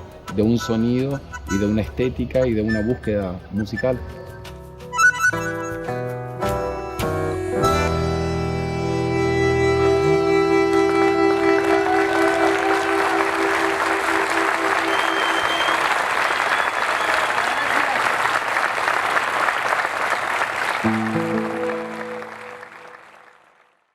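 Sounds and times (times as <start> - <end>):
live band holding a chord: 7.5 - 15.9, 20.8 - 23.2
audience applause: 10.7 - 23.9.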